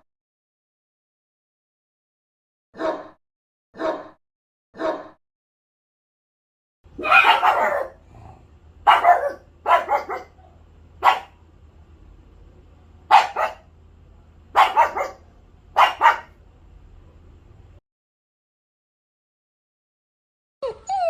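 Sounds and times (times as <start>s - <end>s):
dog barking: 2.8s - 3.2s, 3.8s - 4.2s, 4.8s - 5.2s, 7.0s - 11.4s, 13.1s - 13.7s, 14.5s - 16.4s.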